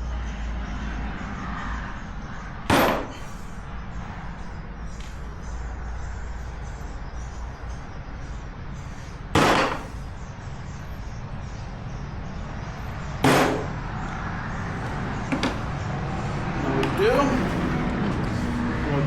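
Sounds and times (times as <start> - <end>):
shop noise: 2.0 - 19.0
hammer striking metal punch: 2.7 - 3.2, 9.4 - 10.0, 13.2 - 13.8.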